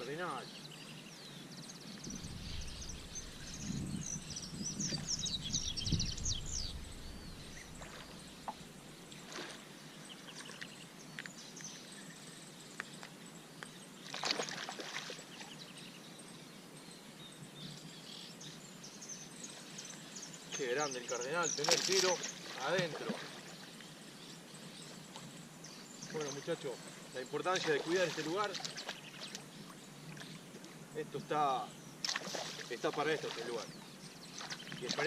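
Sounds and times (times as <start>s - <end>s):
bird chirping: 0.0s - 9.0s, 15.3s - 35.0s
low rumble of wind: 0.9s - 10.2s.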